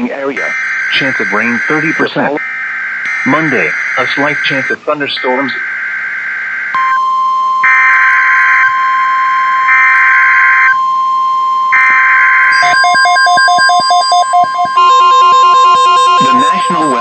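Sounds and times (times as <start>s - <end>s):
rapid beeping tones: 0.0s - 11.0s, 11.6s - 17.0s
warning alarm tone: 0.0s - 17.0s
buzzing digital data bursts: 0.4s - 7.0s, 11.8s - 17.0s.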